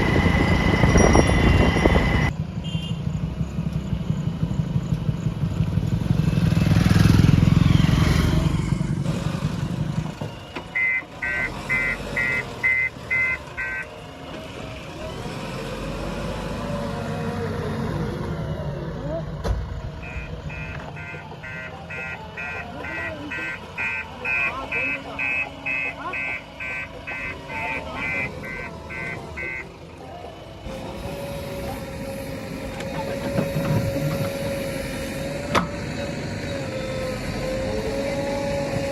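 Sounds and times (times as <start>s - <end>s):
reversing alarm beeps: 0.0s - 2.3s, 10.4s - 13.9s, 20.0s - 29.7s
diesel engine running: 0.0s - 38.9s.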